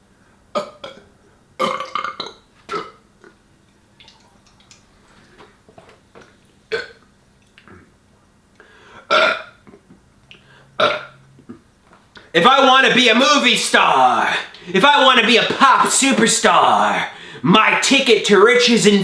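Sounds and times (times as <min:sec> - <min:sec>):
man burping: 0:00.6 - 0:03.4, 0:06.7 - 0:07.0, 0:09.0 - 0:09.9, 0:10.8 - 0:11.7.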